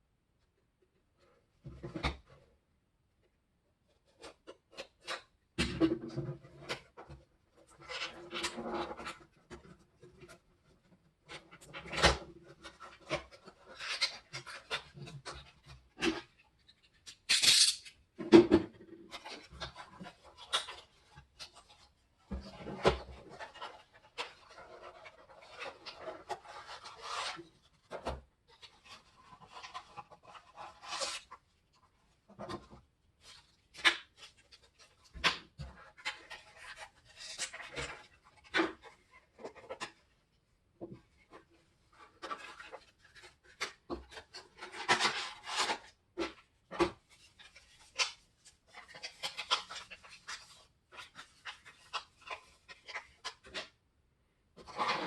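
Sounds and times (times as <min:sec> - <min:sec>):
packaging rustling and scraping: 0:19.0 - 0:40.1, 0:40.9 - 0:53.8, 0:54.6 - 0:55.0.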